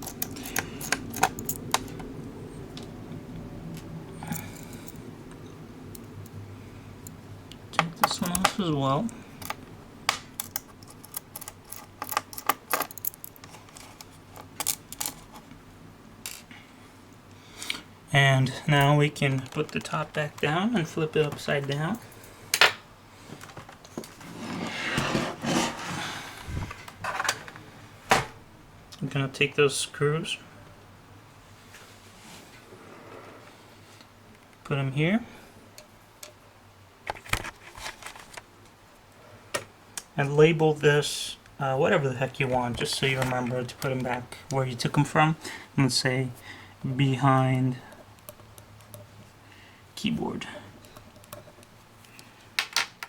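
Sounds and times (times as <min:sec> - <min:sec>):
steady low hum: 0:00.0 - 0:52.6
laptop scraping on desk: 0:24.2 - 0:26.4.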